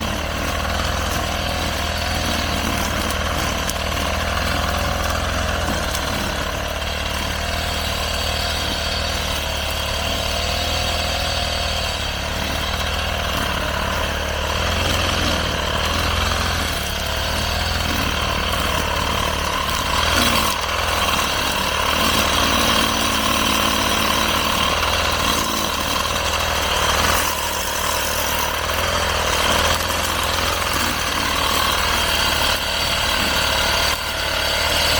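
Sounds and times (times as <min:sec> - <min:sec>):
brush cutter engine cutting grass: 0:00.0 - 0:34.9.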